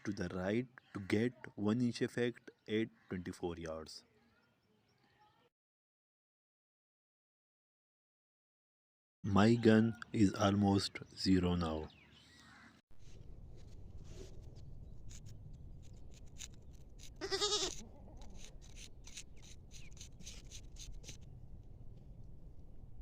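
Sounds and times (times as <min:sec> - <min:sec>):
goat bleating: 0:17.2 - 0:18.3.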